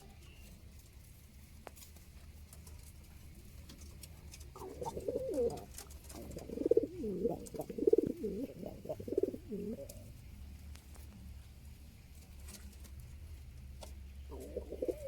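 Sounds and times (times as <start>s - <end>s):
pigeon cooing: 4.5s - 10.1s, 14.3s - 15.0s.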